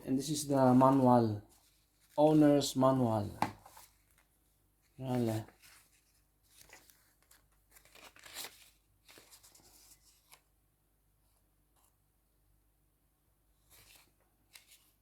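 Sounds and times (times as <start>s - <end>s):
paper and packaging rustling: 0.0s - 10.5s.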